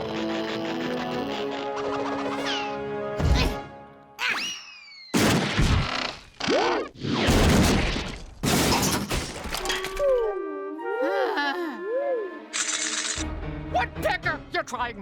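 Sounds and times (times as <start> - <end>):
music: 0.0 - 4.2, 9.6 - 15.0.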